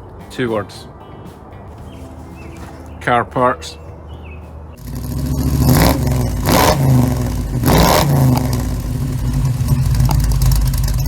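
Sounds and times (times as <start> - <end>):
car engine revving: 4.8 - 11.0.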